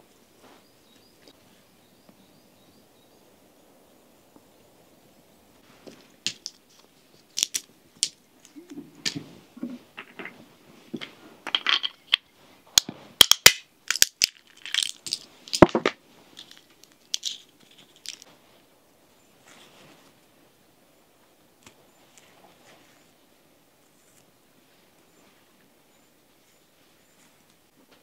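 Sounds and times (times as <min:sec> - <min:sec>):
crunchy rustling: 0:05.6 - 0:18.7.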